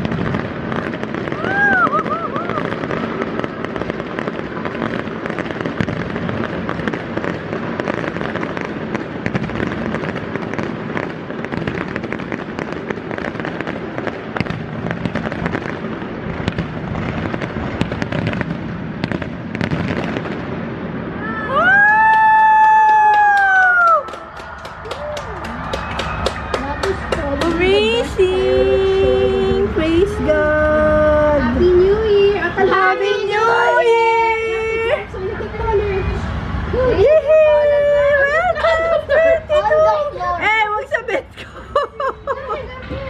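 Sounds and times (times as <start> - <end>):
fireworks crackling and popping: 0.0 - 43.0
loud held pitched tone: 27.6 - 31.7.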